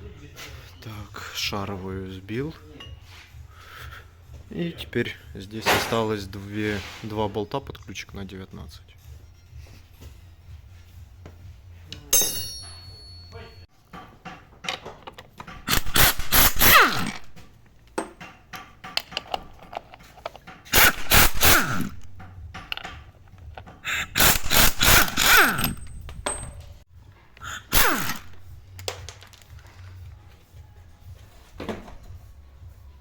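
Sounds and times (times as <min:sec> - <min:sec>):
tools clanking: 0:12.1 - 0:26.8
impact wrench whining: 0:15.5 - 0:17.4, 0:20.6 - 0:26.5, 0:27.4 - 0:28.6.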